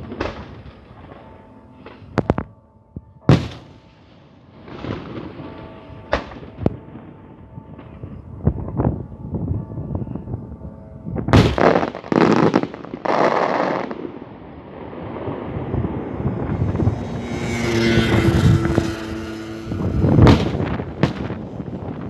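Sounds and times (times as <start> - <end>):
fireworks bangs: 3.3 - 3.9, 11.2 - 22.0
fireworks hiss and crackle: 11.4 - 14.2.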